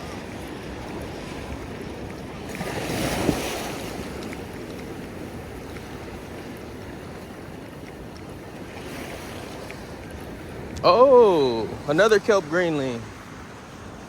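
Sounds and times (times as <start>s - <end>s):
ocean surf on rocky shore: 0.0s - 14.0s
wave breaking with splash: 2.5s - 4.2s.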